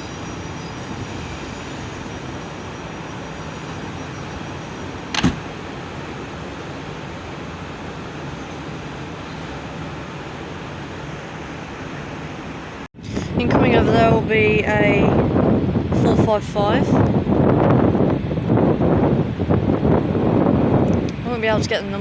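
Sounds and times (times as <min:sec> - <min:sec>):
railway platform hum: 0:00.0 - 0:22.0
sharp knock: 0:05.1 - 0:05.4.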